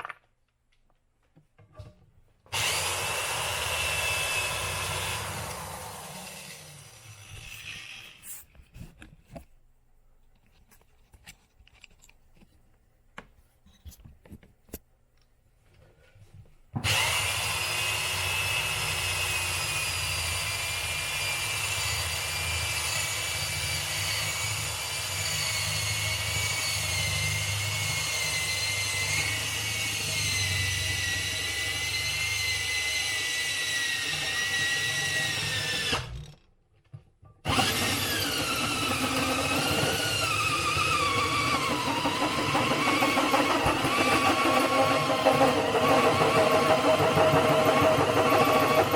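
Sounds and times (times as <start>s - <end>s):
electric drill whining: 2.5s - 8.4s, 16.8s - 36.4s, 37.5s - 48.9s.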